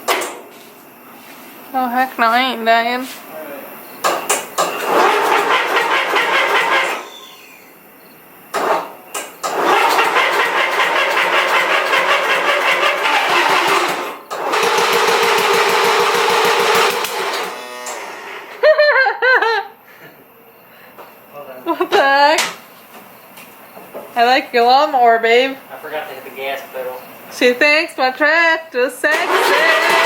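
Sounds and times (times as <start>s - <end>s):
engine starter cranking: 4.1s - 7.6s, 8.5s - 18.6s, 28.9s - 30.0s.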